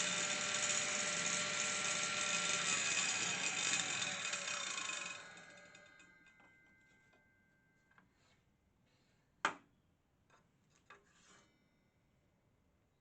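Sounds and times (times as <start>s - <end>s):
table saw blade whine: 0.0s - 7.2s.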